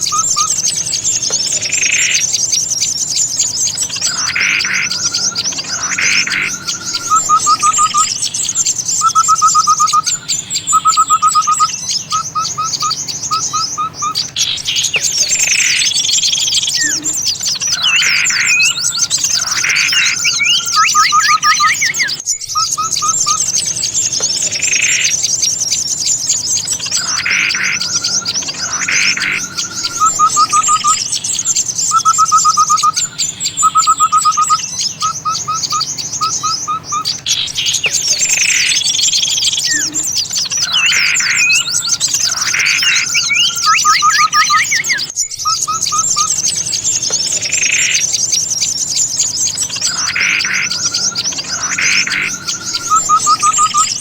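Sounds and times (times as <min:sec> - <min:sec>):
harsh bird calls: 0:00.0 - 0:54.0
high-pitched songbird twittering: 0:00.0 - 0:54.0
short rapid bird trills: 0:00.0 - 0:54.0.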